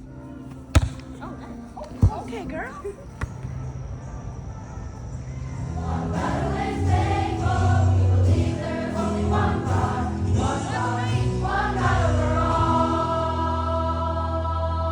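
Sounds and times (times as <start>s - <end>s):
choir singing with music: 5.0s - 14.9s.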